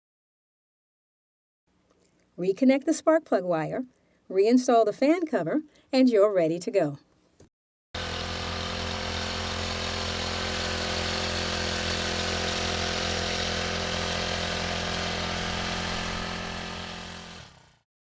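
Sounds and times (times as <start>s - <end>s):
small tiller engine running: 8.0s - 17.9s.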